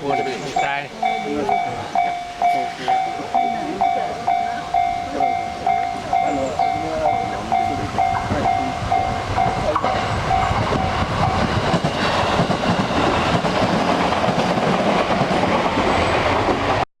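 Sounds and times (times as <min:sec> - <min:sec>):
level crossing bell dinging: 0:00.0 - 0:10.6
electric train passing: 0:00.0 - 0:16.8.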